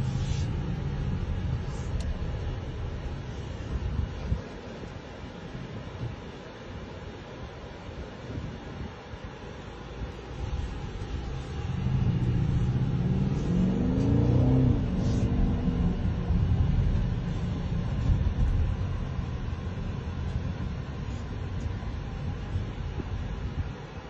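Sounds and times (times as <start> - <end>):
car engine revving: 10.3 - 20.3.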